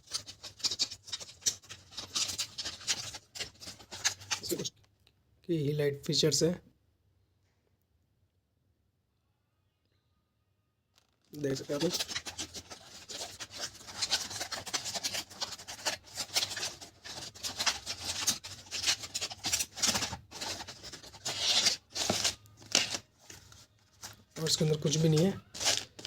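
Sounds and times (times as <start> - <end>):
hands rustling packaging: 0.0 - 4.7, 11.0 - 26.0.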